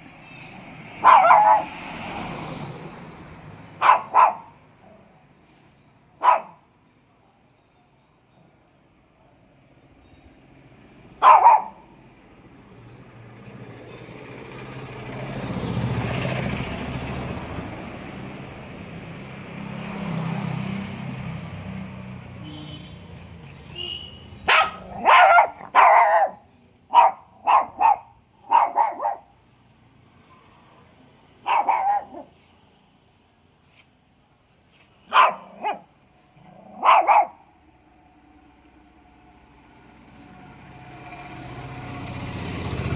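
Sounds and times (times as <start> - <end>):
passing vehicle: 0.0 - 6.6, 10.5 - 33.8, 34.5 - 42.9
dog barking: 0.9 - 2.1, 3.7 - 5.1, 6.2 - 6.7, 11.2 - 11.9, 24.4 - 29.3, 31.4 - 32.4, 35.0 - 37.5.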